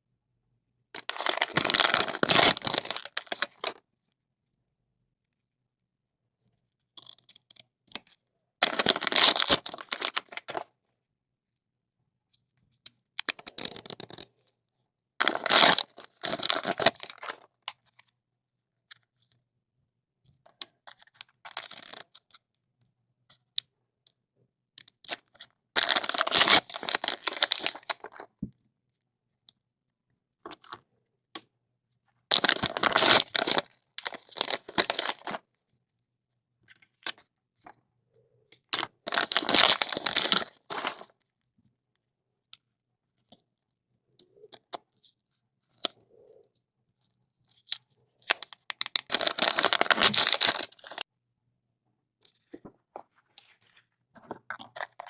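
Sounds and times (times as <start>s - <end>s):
plastic wrappers tearing and crinkling: 1.0s - 3.5s, 8.6s - 10.2s, 15.2s - 17.1s, 25.8s - 27.9s, 32.3s - 35.4s, 39.1s - 41.0s, 48.3s - 51.0s.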